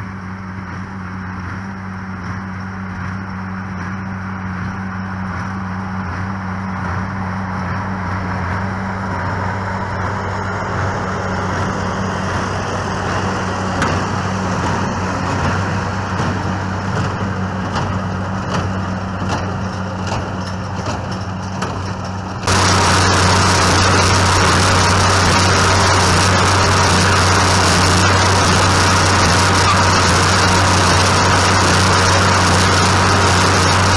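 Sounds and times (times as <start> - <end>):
tractor engine droning: 7.1 - 33.9.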